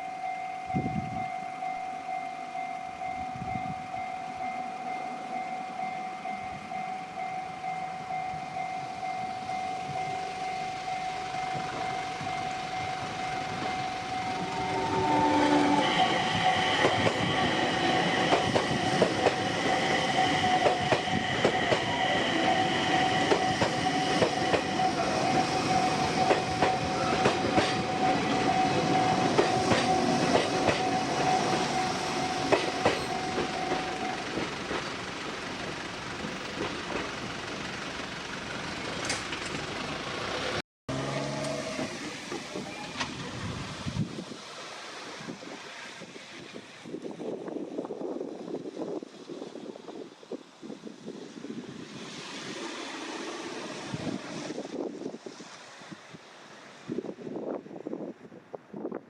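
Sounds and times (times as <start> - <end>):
level crossing warning bell: 0.0 - 35.2
train wheels clacking over rails: 10.4 - 43.4.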